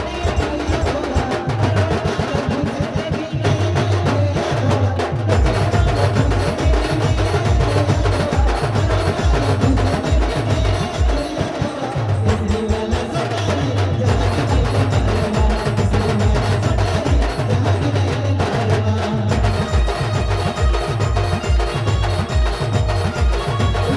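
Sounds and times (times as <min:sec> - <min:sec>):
deep bass drum beats: 0:00.0 - 0:23.9
held melody line: 0:00.0 - 0:23.9
rapid drumming: 0:00.0 - 0:23.9.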